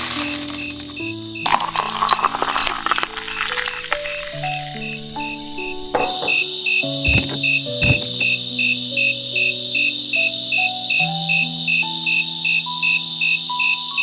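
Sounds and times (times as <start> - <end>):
crickets chirping: 0.0 - 14.0
soft background music: 0.0 - 14.0
low thumps: 4.3 - 8.4.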